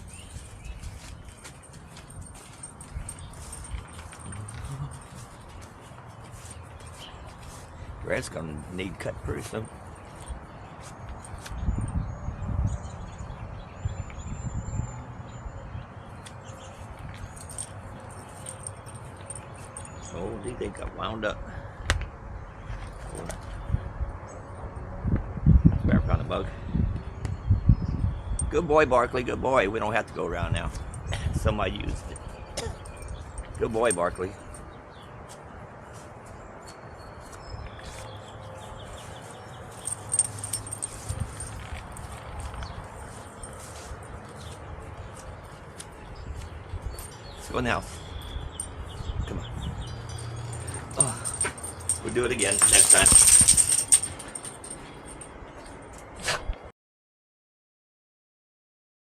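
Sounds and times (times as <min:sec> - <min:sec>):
light metallic clinks and ticks: 0:00.0 - 0:11.6, 0:16.2 - 0:20.8, 0:39.5 - 0:47.4, 0:49.8 - 0:56.1
steady outdoor noise: 0:00.0 - 0:56.7
wind on microphone: 0:11.5 - 0:15.0, 0:23.6 - 0:28.5, 0:48.4 - 0:50.0.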